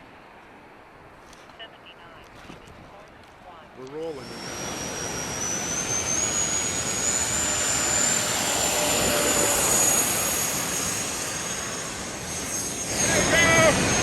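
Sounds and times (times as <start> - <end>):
aircraft flying past: 4.1 - 14.0.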